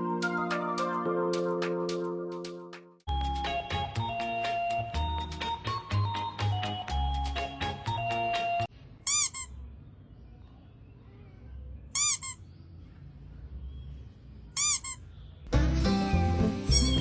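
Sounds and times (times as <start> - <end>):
young pet crying: 12.0 - 12.4.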